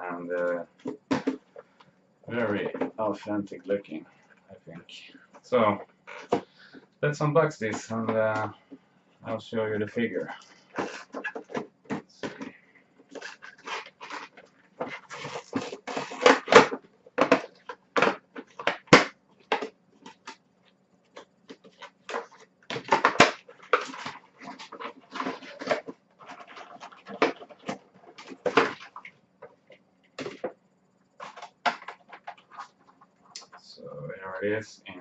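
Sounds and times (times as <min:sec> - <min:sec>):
packaging rustling and crinkling: 0:13.1 - 0:20.4, 0:21.2 - 0:30.5, 0:31.2 - 0:32.9.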